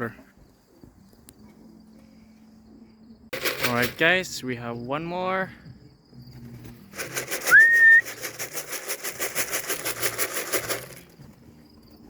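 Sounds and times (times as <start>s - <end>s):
rhythmic rattling: 3.3s - 4.4s, 6.9s - 11.2s
short rising whistle: 7.4s - 8.2s.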